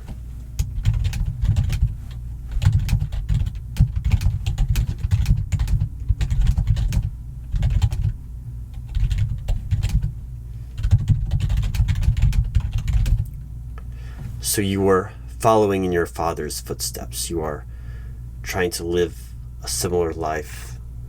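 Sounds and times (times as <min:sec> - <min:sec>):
fast typing on keyboard: 0:00.6 - 0:08.2, 0:08.8 - 0:10.1, 0:10.8 - 0:13.3.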